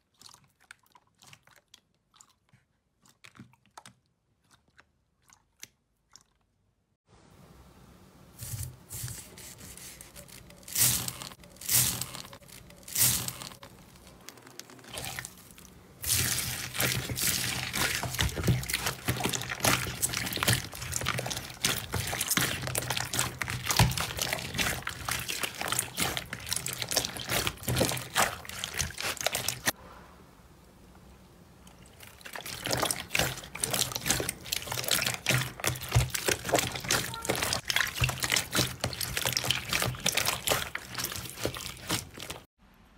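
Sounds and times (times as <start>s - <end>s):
slime squishing and crackling: 10.1s - 29.8s, 31.8s - 42.5s.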